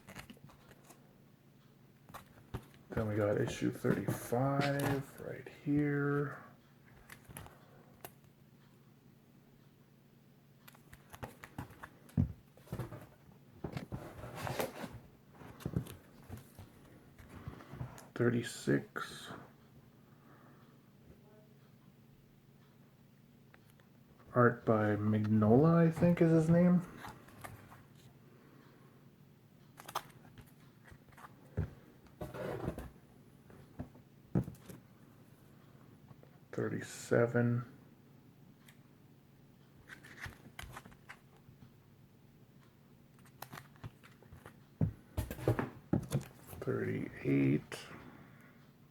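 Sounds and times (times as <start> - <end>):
comic books knocking: 44.8 - 46.3.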